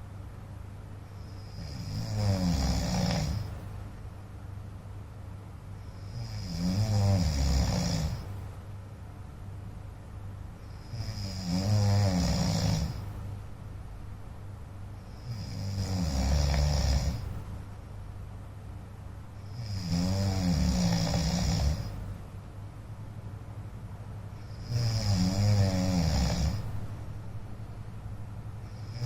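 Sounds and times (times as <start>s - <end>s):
man snoring: 1.2s - 3.6s, 6.0s - 8.4s, 10.7s - 13.2s, 15.1s - 17.4s, 19.5s - 22.1s, 24.4s - 26.8s, 28.7s - 29.0s.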